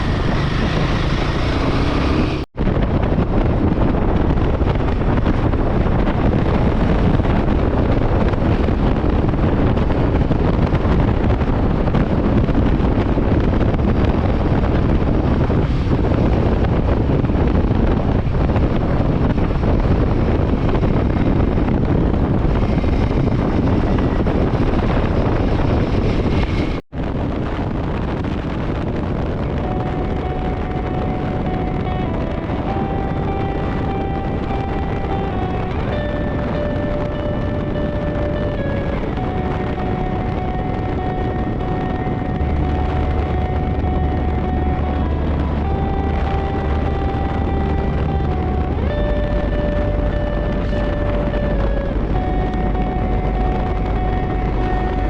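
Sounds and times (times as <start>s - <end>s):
wind rushing over microphone: 0.0s - 55.0s
motorcycle engine running: 27.5s - 55.0s.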